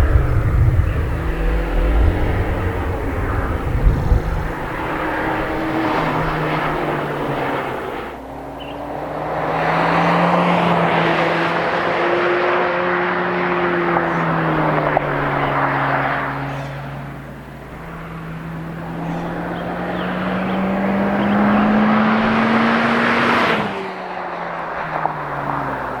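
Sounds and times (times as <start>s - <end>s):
car engine driving by: 0.0s - 26.0s.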